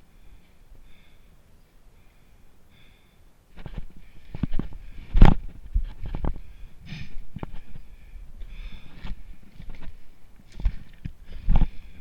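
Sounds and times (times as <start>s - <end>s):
gear knocks and rustles: 3.6s - 6.5s, 7.3s - 12.0s.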